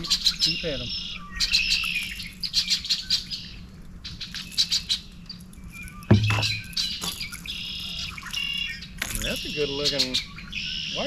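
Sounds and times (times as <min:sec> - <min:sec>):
birds chirping: 0:00.0 - 0:11.0
sudden thump: 0:06.1 - 0:06.8.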